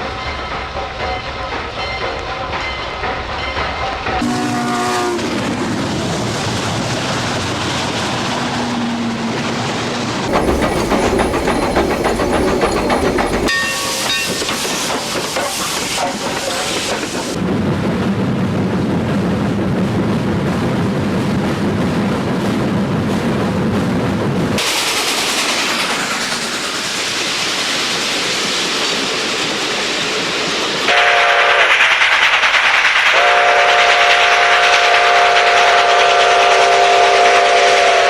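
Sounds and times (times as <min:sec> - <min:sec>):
steam locomotive running: 0:00.0 - 0:38.0
train whistle tones: 0:04.2 - 0:05.4, 0:30.9 - 0:31.8, 0:33.1 - 0:38.0
rail clatter: 0:05.2 - 0:17.4
steam hiss: 0:10.3 - 0:17.4, 0:24.6 - 0:37.8.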